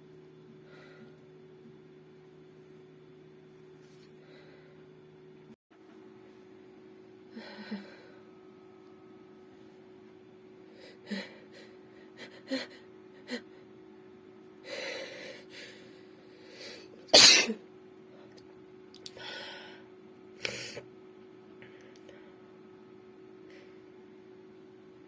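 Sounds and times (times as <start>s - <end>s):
woman sneezing: 17.2s - 17.6s.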